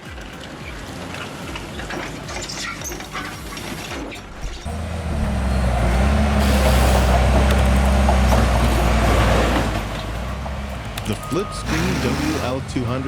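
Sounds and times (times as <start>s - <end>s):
heavy truck engine rumbling: 0.0s - 13.0s
hiss: 6.4s - 7.4s.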